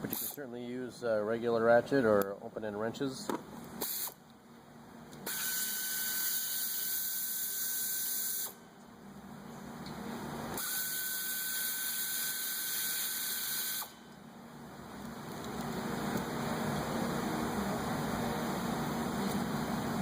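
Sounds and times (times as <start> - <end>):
pneumatic air ratchet running: 0.0 - 0.4, 3.8 - 4.2, 5.2 - 8.6, 10.6 - 14.0.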